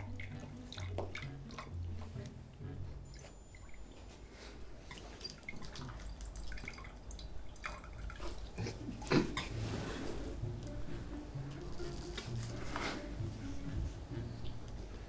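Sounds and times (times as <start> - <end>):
water dripping into a glass: 0.0 - 4.1, 4.9 - 8.7.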